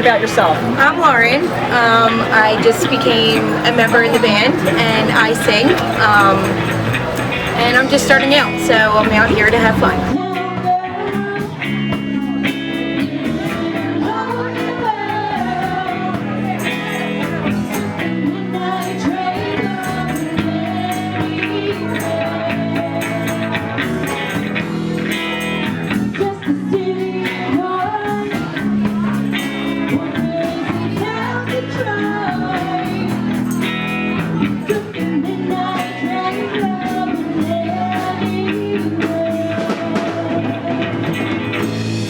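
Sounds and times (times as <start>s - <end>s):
rock band playing: 0.0s - 42.0s
person singing: 34.2s - 41.8s.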